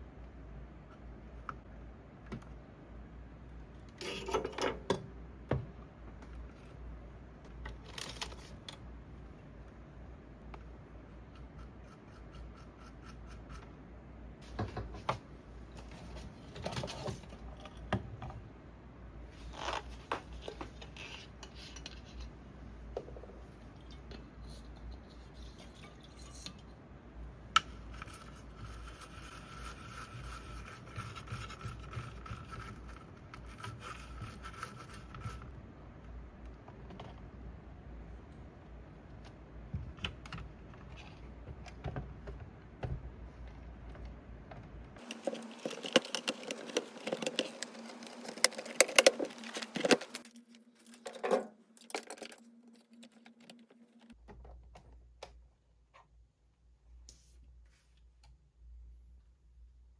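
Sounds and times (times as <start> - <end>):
clicks and scrapes of small parts: 7.5 - 8.9, 19.4 - 22.4, 23.7 - 26.8, 27.6 - 35.5, 45.0 - 54.9.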